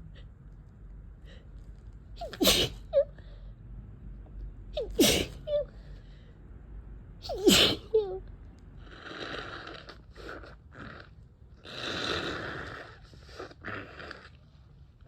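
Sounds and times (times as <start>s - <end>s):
person sneezing: 2.2s - 3.0s, 4.8s - 5.5s, 7.2s - 8.1s.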